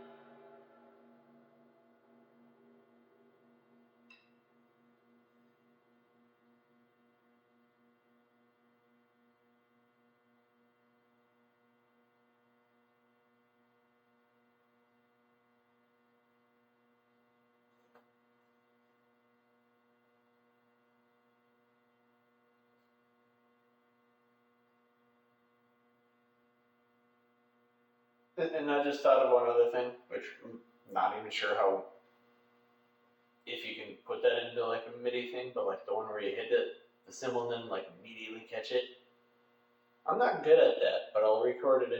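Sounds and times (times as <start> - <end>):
drum kit hit ringing: 0.0 - 4.5
faint steady hum: 0.0 - 41.9.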